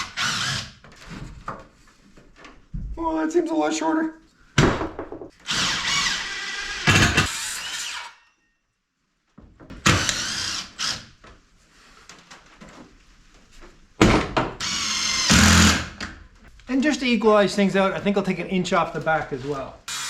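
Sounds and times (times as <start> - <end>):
power drill running: 0.0 - 0.8, 5.5 - 8.2, 9.8 - 11.0, 14.6 - 16.0.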